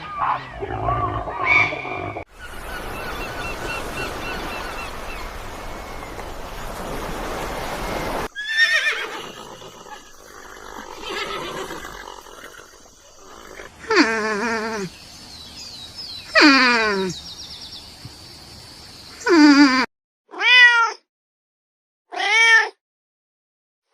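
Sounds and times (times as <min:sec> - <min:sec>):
horse whinnying: 0:08.3 - 0:14.9.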